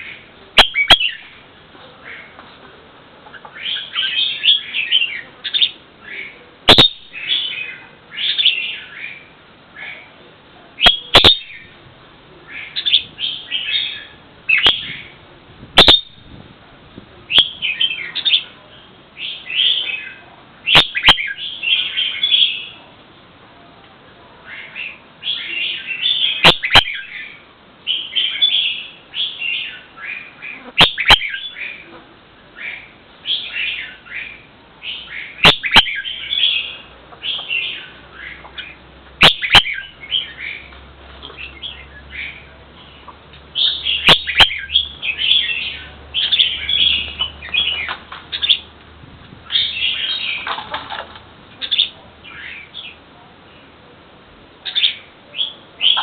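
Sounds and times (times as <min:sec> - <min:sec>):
bird chirping: 0:00.0 - 0:01.4, 0:03.3 - 0:10.0, 0:10.8 - 0:11.7, 0:12.5 - 0:15.2, 0:15.8 - 0:16.4, 0:17.3 - 0:22.8, 0:24.5 - 0:31.9, 0:32.6 - 0:48.7, 0:49.5 - 0:50.8, 0:54.6 - 0:56.0.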